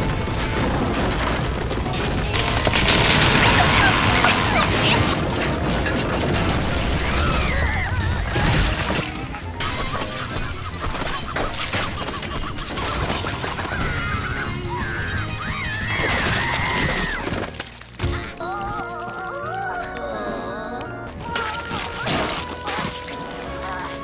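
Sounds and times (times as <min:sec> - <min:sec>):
crashing and breaking effects: 0:00.0 - 0:10.3
cartoon music: 0:18.1 - 0:24.0.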